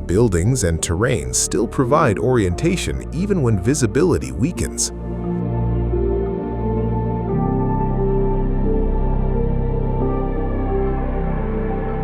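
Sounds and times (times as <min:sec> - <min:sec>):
slow synth chords: 0:04.9 - 0:12.0.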